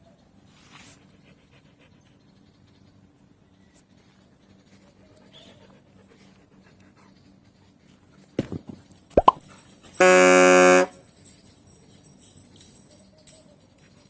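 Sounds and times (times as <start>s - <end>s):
sudden plop: 9.2s - 9.4s
flat horn honk: 10.0s - 11.0s.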